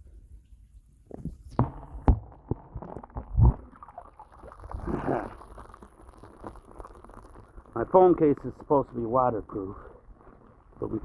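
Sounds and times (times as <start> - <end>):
muffled water gurgling: 1.4 - 11.0.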